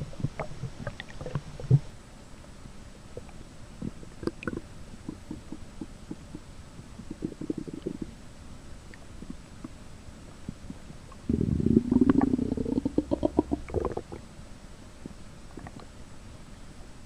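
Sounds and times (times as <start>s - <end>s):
stomach growling: 3.8s - 8.2s, 10.5s - 14.3s, 15.0s - 15.9s.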